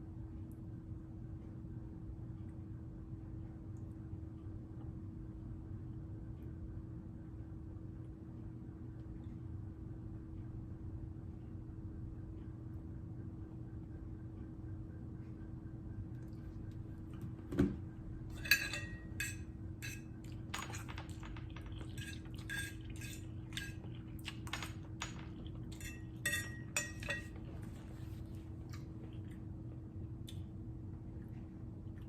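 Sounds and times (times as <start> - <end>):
low hum: 0.0 - 32.0
cutlery clinking against dish: 18.3 - 27.4.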